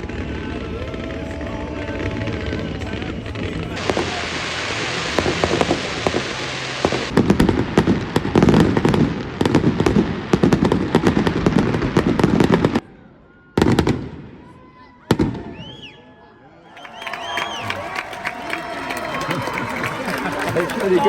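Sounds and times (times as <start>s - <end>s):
fireworks bangs and crackles: 0.0s - 12.9s, 13.6s - 14.5s, 15.1s - 15.7s.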